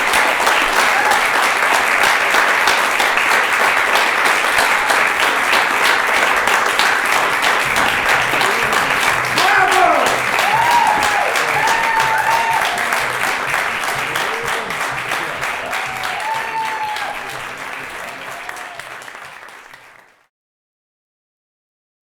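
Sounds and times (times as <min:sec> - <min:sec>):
audience applauding: 0:00.0 - 0:20.3
voices calling out: 0:07.6 - 0:16.8.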